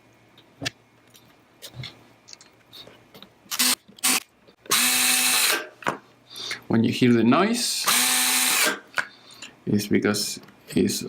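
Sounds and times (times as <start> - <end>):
electric screwdriver driving screws: 3.5 - 5.7, 7.9 - 8.8.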